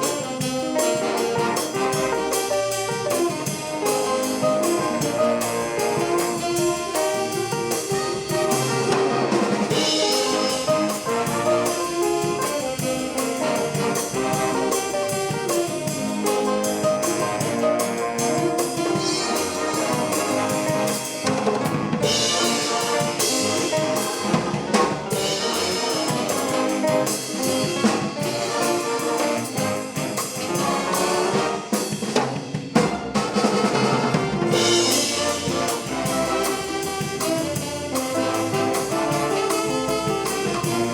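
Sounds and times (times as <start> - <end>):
brass section playing: 0.0 - 40.9
drum kit: 0.0 - 40.9.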